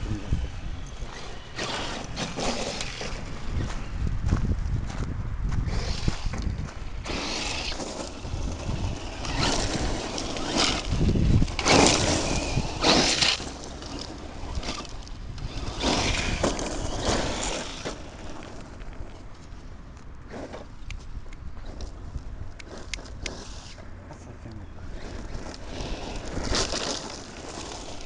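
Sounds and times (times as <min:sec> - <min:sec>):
electric rc truck accelerating: 0:00.0 - 0:04.8, 0:05.5 - 0:19.7, 0:20.3 - 0:24.0, 0:24.8 - 0:28.0
wind rumble on microphone: 0:00.0 - 0:28.0.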